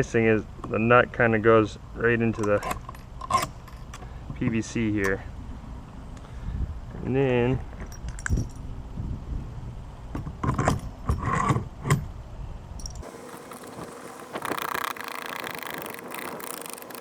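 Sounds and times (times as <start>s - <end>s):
steady hiss: 13.0s - 17.0s.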